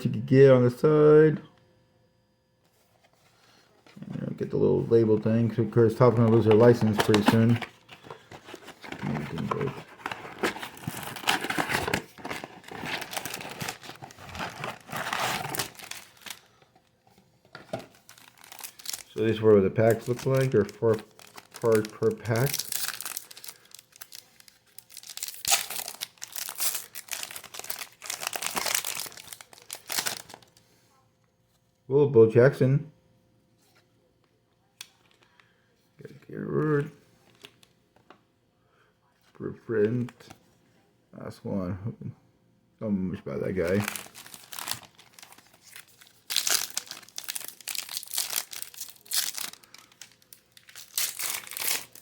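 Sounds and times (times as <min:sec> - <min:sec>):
wrapper crinkling: 0:05.9 - 0:16.9, 0:17.6 - 0:30.6, 0:43.6 - 0:52.0.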